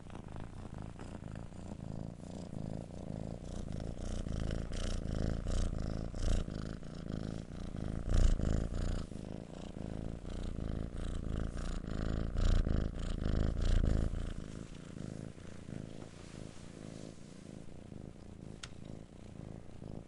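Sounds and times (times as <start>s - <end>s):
kitten purring: 0.0s - 20.0s.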